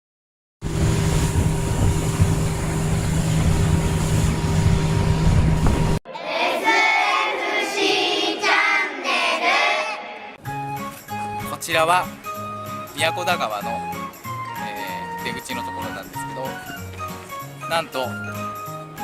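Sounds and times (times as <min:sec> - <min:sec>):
mechanical drone with low hum: 0:00.6 - 0:06.0.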